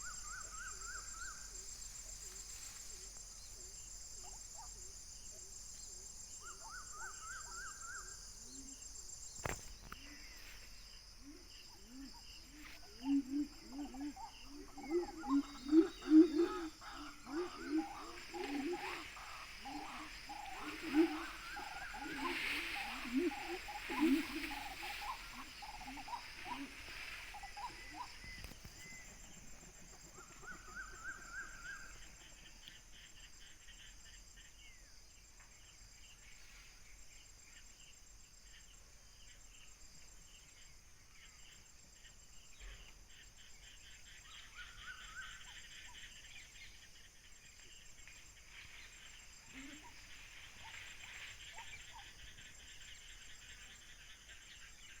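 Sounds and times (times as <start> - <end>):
whistled bird calls: 0.0 - 1.5, 13.0 - 29.5, 30.1 - 32.2
insect buzz: 0.0 - 55.0
bird chirps: 11.9 - 32.7.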